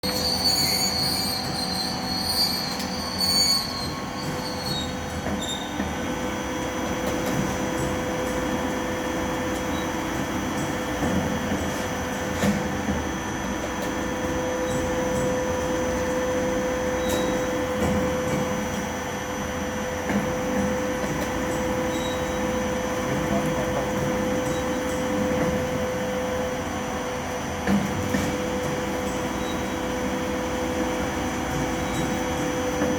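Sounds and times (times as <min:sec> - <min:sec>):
high squeal: 0:00.0 - 0:05.8.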